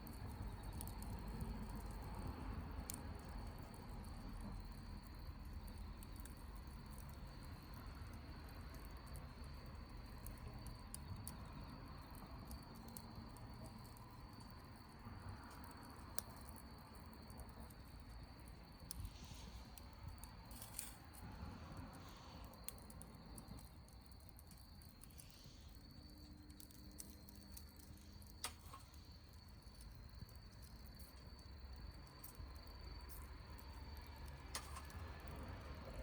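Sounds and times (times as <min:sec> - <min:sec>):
campfire crackling: 0:00.0 - 0:36.0
fire popping and snapping: 0:00.0 - 0:36.0.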